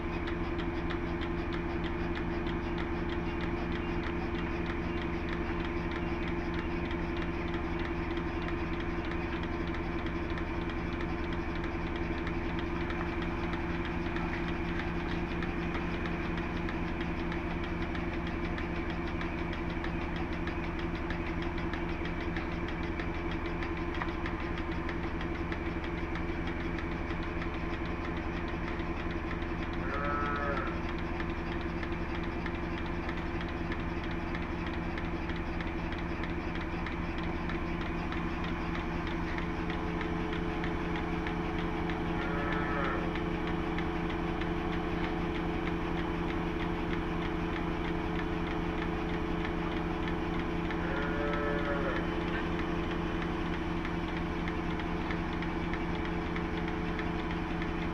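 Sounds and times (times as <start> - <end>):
engine hum: 0.0 - 57.9
cattle mooing: 29.8 - 30.8, 42.2 - 43.1, 50.8 - 52.1.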